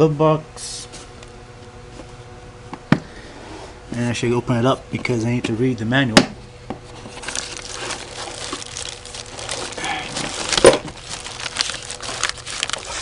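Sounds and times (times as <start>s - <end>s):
packaging crinkling and rustling: 6.9s - 13.0s.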